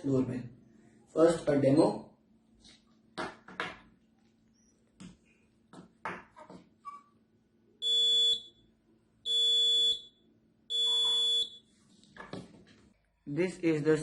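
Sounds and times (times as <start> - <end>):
doorbell buzzer beeping: 7.8 - 8.6, 9.3 - 11.6.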